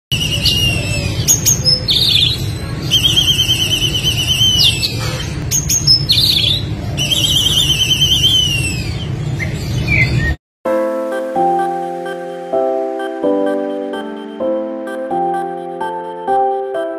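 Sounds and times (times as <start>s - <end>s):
bird singing trills: 0.1s - 10.4s.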